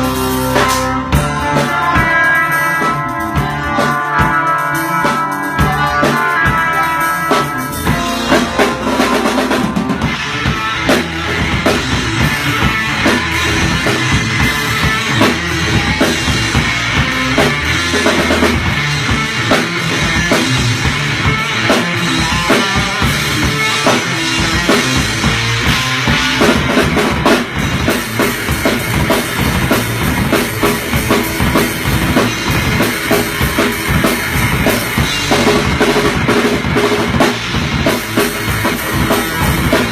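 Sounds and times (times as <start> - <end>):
heavy bass drum: 0.0 - 39.9
rock music: 0.0 - 39.9.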